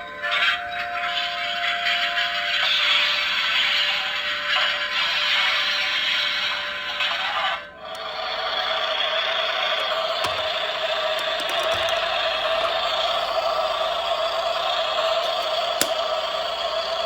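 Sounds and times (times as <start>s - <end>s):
toy vehicle mechanical whir: 7.2s - 17.0s
sharp plastic clicks: 9.8s - 13.6s, 15.0s - 16.3s.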